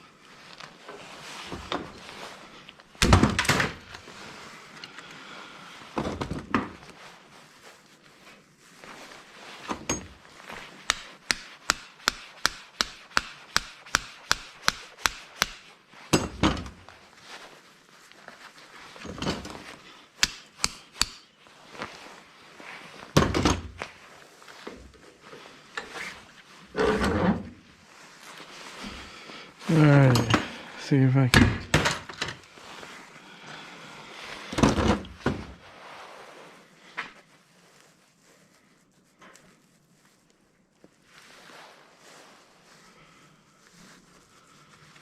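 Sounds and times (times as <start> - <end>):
hammer striking scrap metal: 10.9 - 16.4, 20.2 - 21.3.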